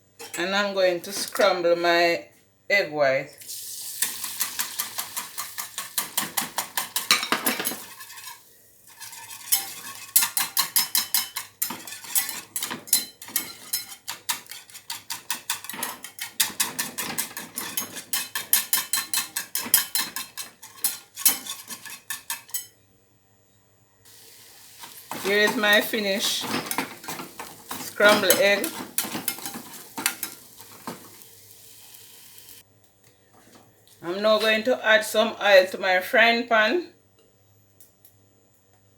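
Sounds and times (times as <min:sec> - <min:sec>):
utensil scraping and knocking a pot: 0:04.0 - 0:22.7, 0:24.8 - 0:31.1.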